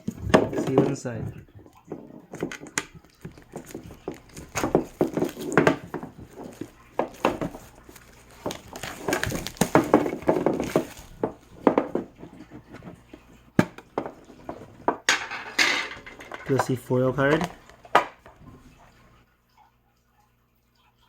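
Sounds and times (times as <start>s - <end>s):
metal tin clicks and knocks: 13.6s - 18.2s.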